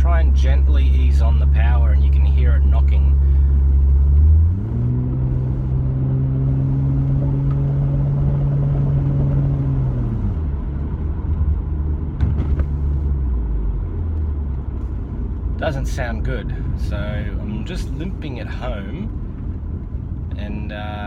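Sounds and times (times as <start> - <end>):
car engine revving: 0.0 - 15.1.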